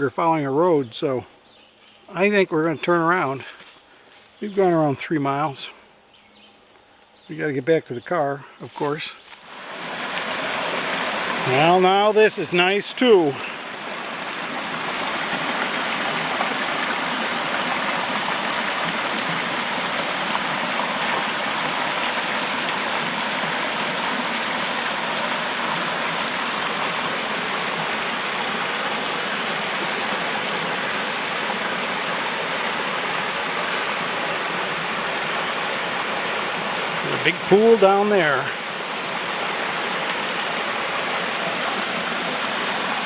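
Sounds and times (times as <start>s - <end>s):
water rushing over rocks: 9.4s - 43.0s.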